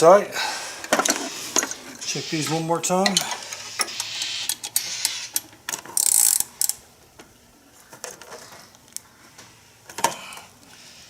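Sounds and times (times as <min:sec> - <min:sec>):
hand ratchet clicking: 0:06.0 - 0:06.8.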